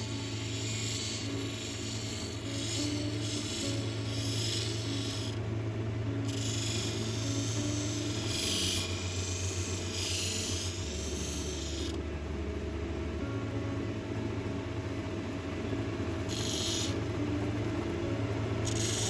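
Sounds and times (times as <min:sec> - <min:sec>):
gritty hiss of stone sanding: 0:00.0 - 0:05.4, 0:06.2 - 0:12.0, 0:16.3 - 0:17.0, 0:18.6 - 0:19.0
lapidary wheel motor hum: 0:00.0 - 0:19.0.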